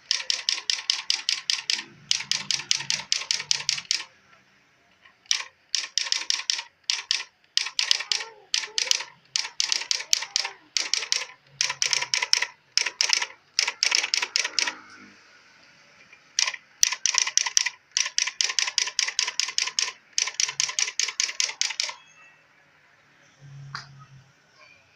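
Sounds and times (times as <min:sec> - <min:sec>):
electronic typewriter striking keys: 0:00.0 - 0:04.1, 0:05.2 - 0:14.8, 0:16.4 - 0:22.0.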